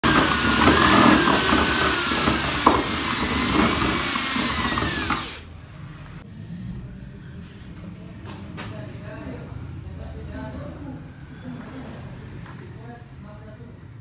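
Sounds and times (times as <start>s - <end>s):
power drill motor whining: 0.0s - 5.4s.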